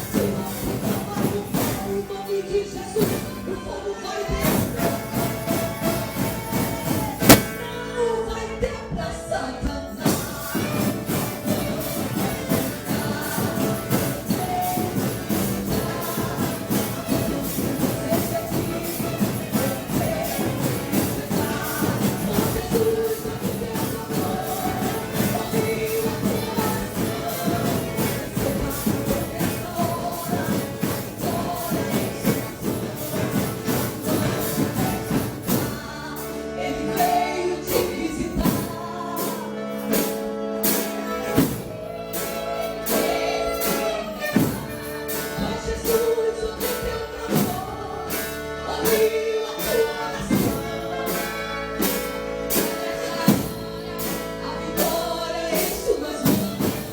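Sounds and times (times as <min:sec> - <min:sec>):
drum kit fast beat: 0:00.0 - 0:03.5, 0:04.4 - 0:07.8, 0:09.8 - 0:56.9
person singing gospel song: 0:00.0 - 0:56.9.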